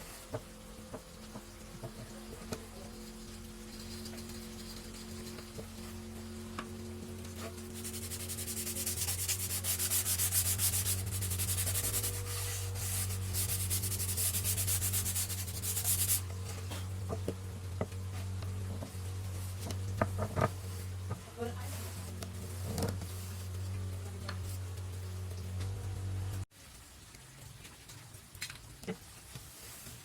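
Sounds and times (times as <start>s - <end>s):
steady low hum: 0.0s - 26.5s
sandpaper rubbing on wood: 7.4s - 16.2s.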